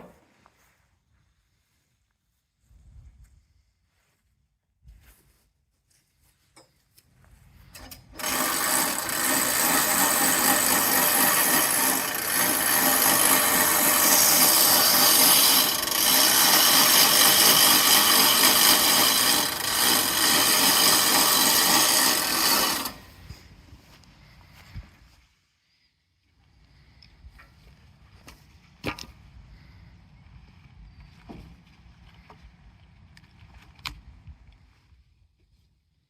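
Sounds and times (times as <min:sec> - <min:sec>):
bandsaw mill sawing log: 0:08.1 - 0:23.2.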